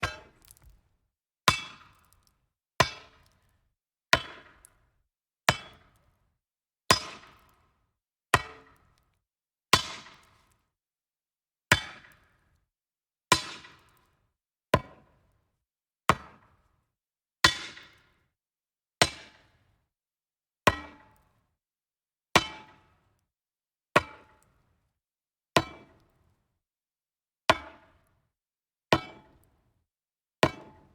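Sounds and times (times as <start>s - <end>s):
metal object striking wood: 0.0s - 0.8s.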